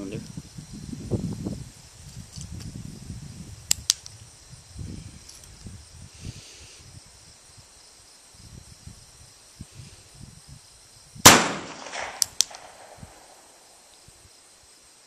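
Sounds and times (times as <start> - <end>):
revolver gunshot: 11.2 - 13.6
short sharp clicks: 11.8 - 12.8.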